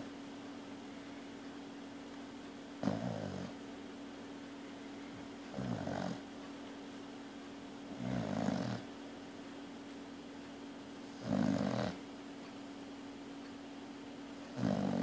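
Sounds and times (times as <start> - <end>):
steady low hum: 0.0 - 15.0
snoring: 2.8 - 3.6, 5.5 - 6.2, 7.9 - 8.9, 11.1 - 12.0, 14.5 - 15.0.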